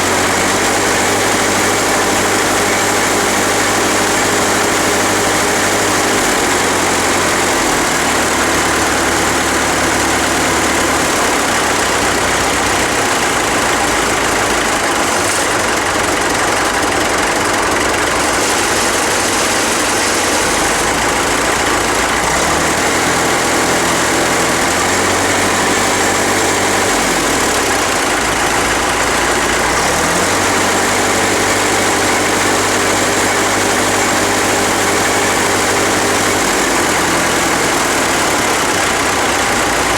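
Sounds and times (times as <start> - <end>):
tractor engine revving: 0.0 - 39.9
sheet metal buzzing: 17.0 - 26.8.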